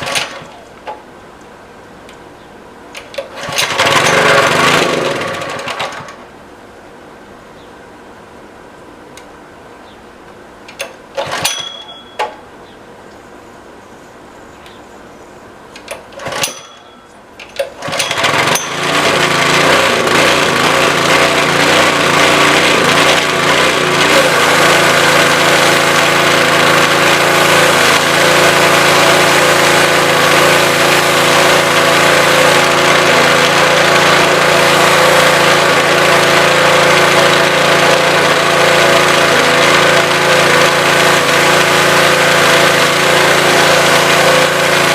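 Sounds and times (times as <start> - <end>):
engine pull-started and running: 0.0 - 1.0, 3.0 - 6.3, 10.7 - 12.4, 15.8 - 44.9.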